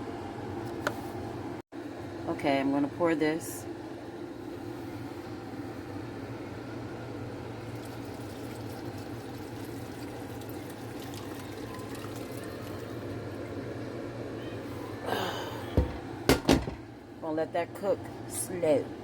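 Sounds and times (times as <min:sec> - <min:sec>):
liquid pouring into a pot: 0:07.7 - 0:13.5.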